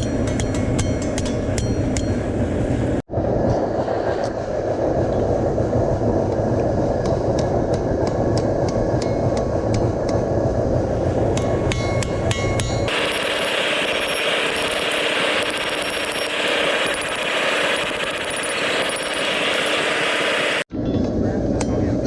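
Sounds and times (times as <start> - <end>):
hammer striking steel on anvil: 12.9 - 20.7.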